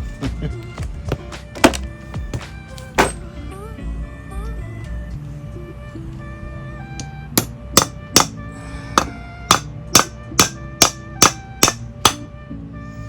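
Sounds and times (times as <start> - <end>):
faint background music: 0.0 - 13.0
hammer striking metal wrench: 3.0 - 3.2, 7.4 - 8.4, 9.0 - 12.2.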